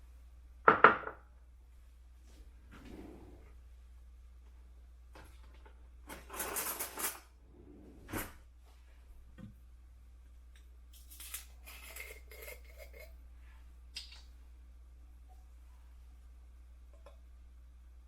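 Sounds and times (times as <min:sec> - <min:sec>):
faint rustling and scraping: 0:02.2 - 0:03.6.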